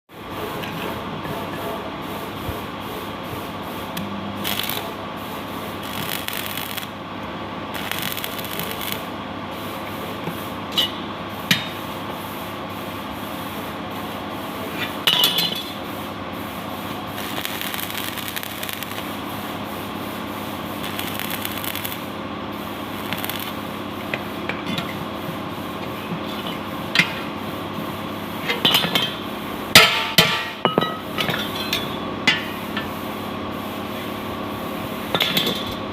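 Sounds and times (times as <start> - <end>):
steady machine hum: 0.1 - 35.9
welding hiss: 2.2 - 7.1, 7.7 - 35.7
hammer strikes on metal: 29.8 - 32.9.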